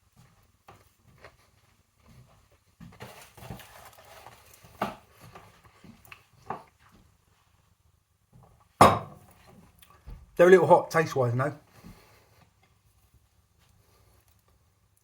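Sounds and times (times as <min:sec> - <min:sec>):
breathing: 0:11.7 - 0:12.6, 0:13.6 - 0:14.4.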